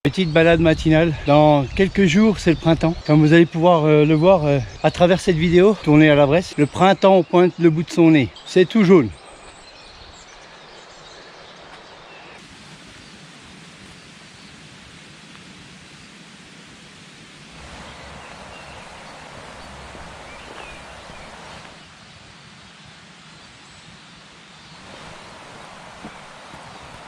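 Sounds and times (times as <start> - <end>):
steady rushing hiss: 9.2 - 27.0
faint bird chirps: 17.7 - 22.0.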